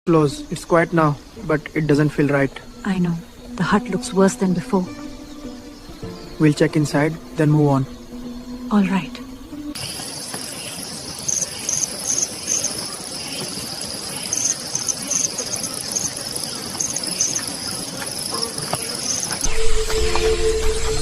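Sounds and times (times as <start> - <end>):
music: 0.1 - 10.8, 18.8 - 21.0
cricket chirps: 0.1 - 21.0
insects droning: 0.1 - 21.0.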